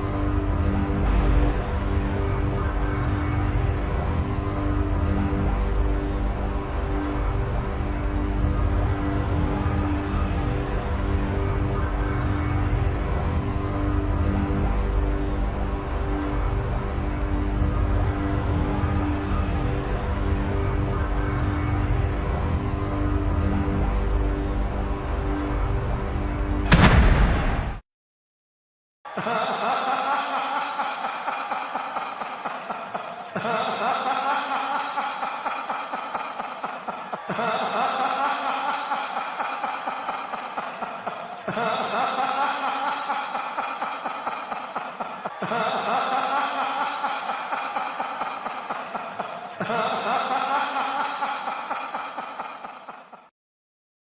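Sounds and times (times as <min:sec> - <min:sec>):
person laughing: 0:29.1 - 0:53.3.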